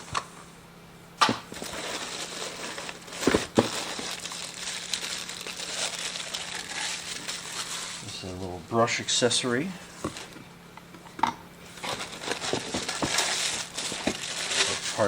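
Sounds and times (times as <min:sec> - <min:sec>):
plastic packaging crinkling: 0:01.4 - 0:08.1, 0:11.7 - 0:15.0.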